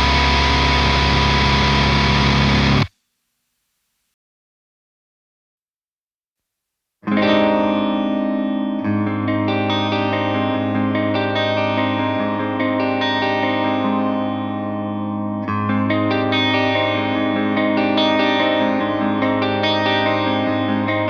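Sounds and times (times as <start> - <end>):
electric guitar chords: 0.0 - 2.9, 7.0 - 21.0.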